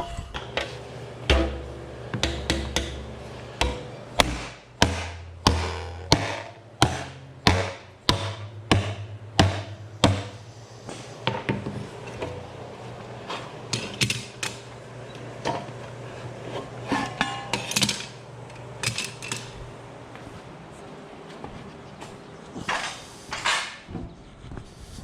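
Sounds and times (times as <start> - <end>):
low hum: 0.0 - 22.6
hand tools knocking on metal: 1.3 - 10.5.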